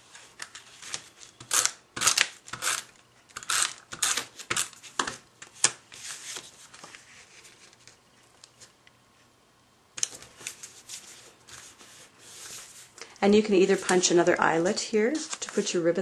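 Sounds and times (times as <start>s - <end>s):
paper rustling and scraping: 5.9s - 8.0s, 10.3s - 13.0s, 15.1s - 15.8s.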